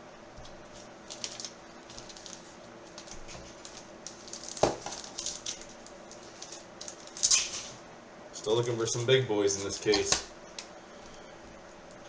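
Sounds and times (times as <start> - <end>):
cards and packaging handled: 0.7 - 7.7.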